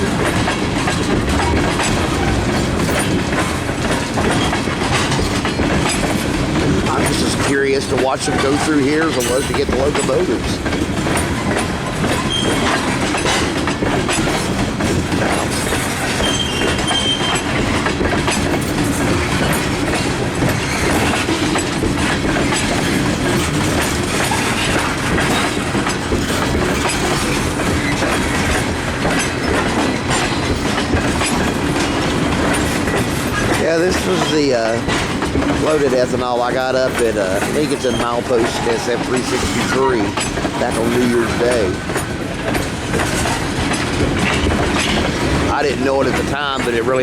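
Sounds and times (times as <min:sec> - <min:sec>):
train wheels clacking on rail joints: 0:00.0 - 0:47.0
high wheel squeals: 0:11.2 - 0:13.0, 0:15.8 - 0:17.6, 0:20.4 - 0:21.6, 0:35.7 - 0:41.7.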